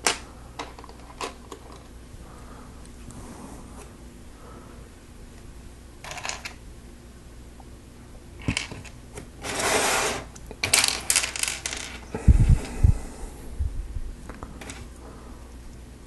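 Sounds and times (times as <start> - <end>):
plastic pieces clattering: 10.6 - 12.0.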